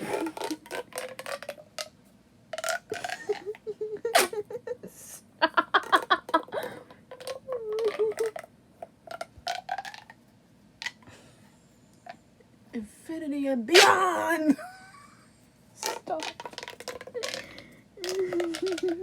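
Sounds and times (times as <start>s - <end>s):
plastic pop tube zips and pops: 0.0s - 3.5s, 4.1s - 4.4s, 7.1s - 10.2s, 10.8s - 11.1s, 15.8s - 19.0s.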